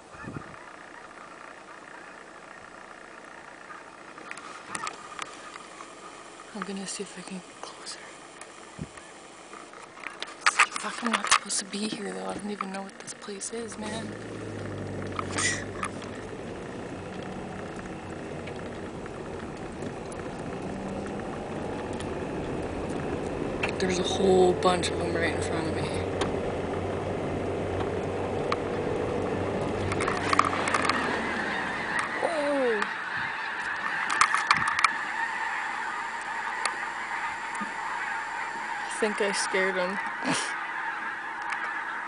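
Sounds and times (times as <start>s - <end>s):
flock of birds calling: 0.0s - 42.0s
road noise: 0.0s - 42.0s
car engine running: 0.1s - 41.8s
faint ticks: 0.6s - 23.8s.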